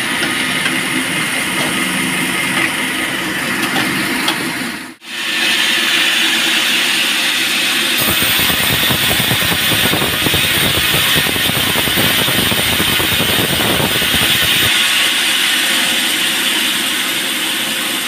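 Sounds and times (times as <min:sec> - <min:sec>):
sawmill hum: 0:00.0 - 0:18.0
saw blade cutting wood: 0:05.5 - 0:17.9.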